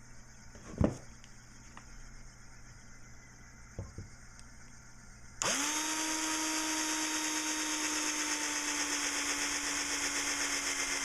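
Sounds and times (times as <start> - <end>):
electric drill whine: 5.4 - 11.0.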